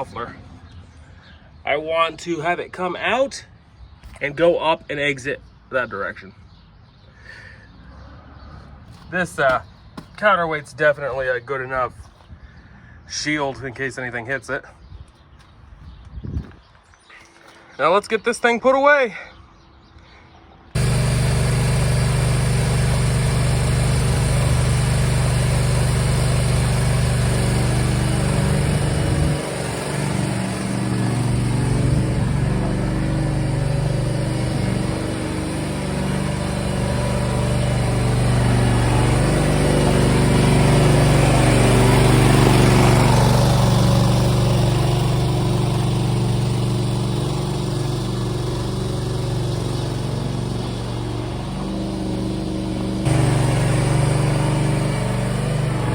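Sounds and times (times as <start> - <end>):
small engine running: 20.8 - 55.9.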